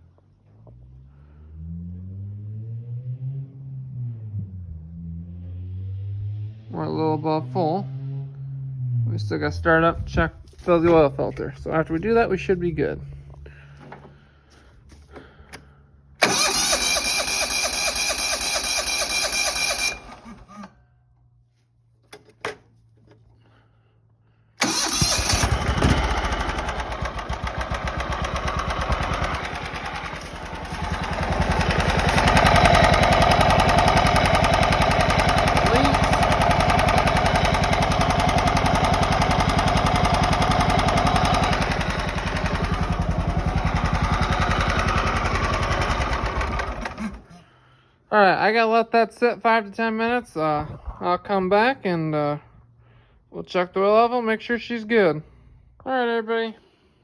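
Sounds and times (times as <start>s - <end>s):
lawn tractor engine running: 9.8s - 20.8s, 24.6s - 47.6s.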